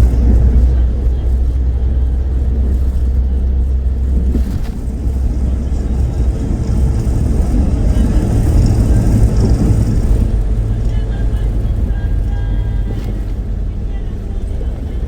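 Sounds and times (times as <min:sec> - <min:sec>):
vehicle engine and road noise: 0:00.0 - 0:15.0.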